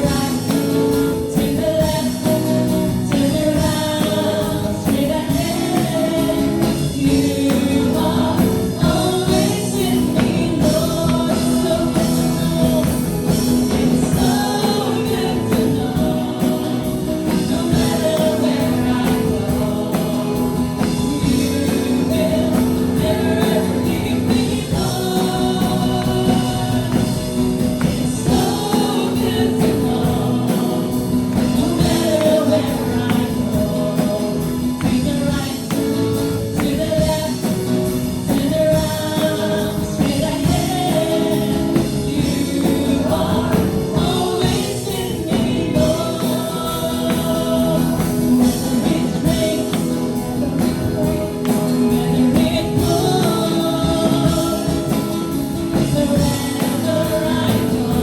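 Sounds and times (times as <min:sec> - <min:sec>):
band with steady beat: 0:00.0 - 0:58.0
group singing gospel song: 0:00.0 - 0:58.0.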